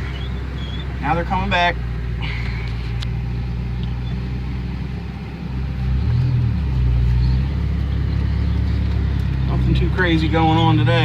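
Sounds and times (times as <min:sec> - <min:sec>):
engine humming: 0:00.0 - 0:11.0.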